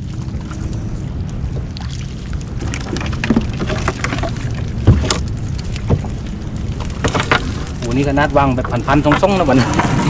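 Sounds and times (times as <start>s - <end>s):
water dripping: 0.0s - 9.5s
boat engine running: 0.0s - 10.0s
knocks of net hauled aboard: 6.8s - 10.0s.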